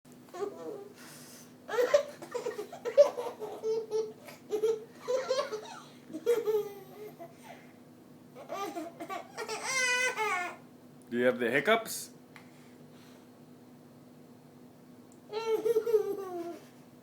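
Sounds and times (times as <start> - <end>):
young child laughing: 1.7 - 7.6, 8.4 - 10.6, 15.3 - 16.8.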